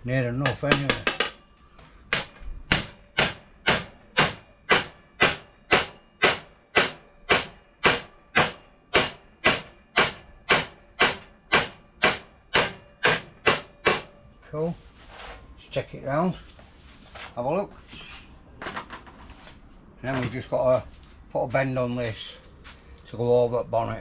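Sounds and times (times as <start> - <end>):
hammer striking steel panel: 0.4 - 1.5, 2.1 - 14.2.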